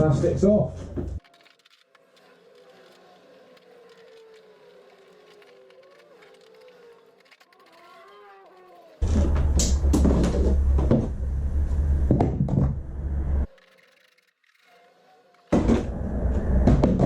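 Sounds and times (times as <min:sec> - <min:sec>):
heavy low rumble: 0:09.0 - 0:13.5.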